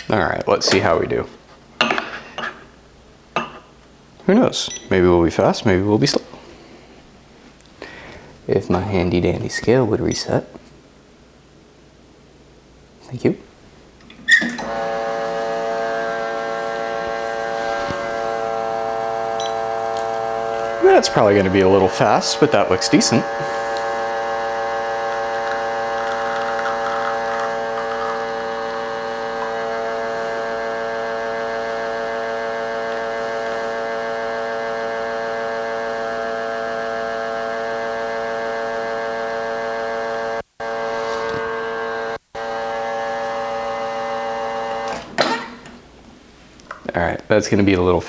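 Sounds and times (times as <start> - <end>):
espresso machine pump buzzing: 14.3 - 45.8.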